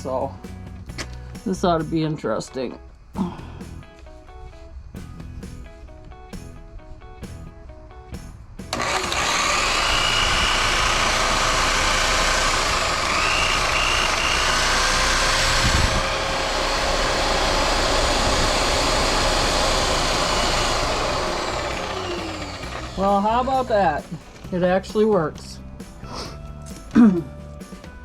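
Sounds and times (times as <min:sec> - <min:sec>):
electric buffer motor whining: 0:08.7 - 0:24.6.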